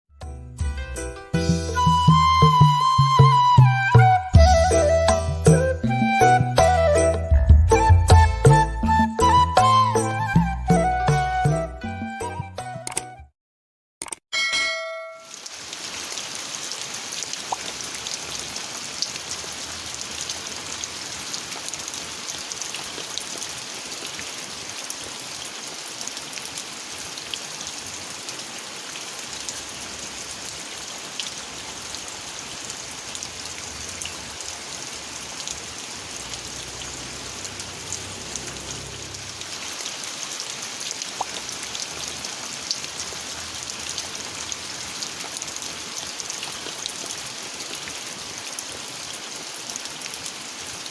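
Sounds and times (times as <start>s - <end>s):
steady rain falling: 15.2s - 50.9s.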